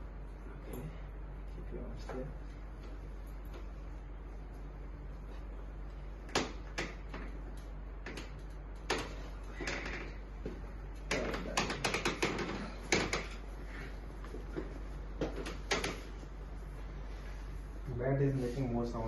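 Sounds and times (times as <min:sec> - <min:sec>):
low electrical hum: 0:00.0 - 0:19.0
treatment table creaking and clicking: 0:06.2 - 0:16.4.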